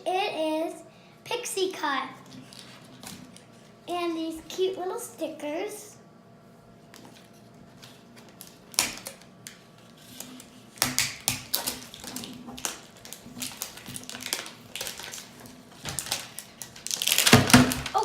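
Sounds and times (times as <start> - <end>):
plastic packaging crinkling: 7.1 - 18.0.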